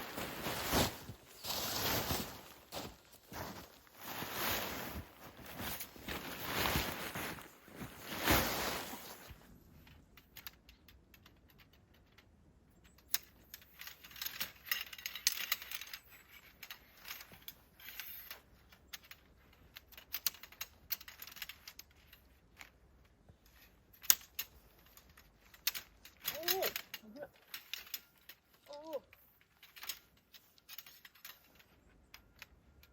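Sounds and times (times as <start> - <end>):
light clicks and clatter: 9.2 - 32.9.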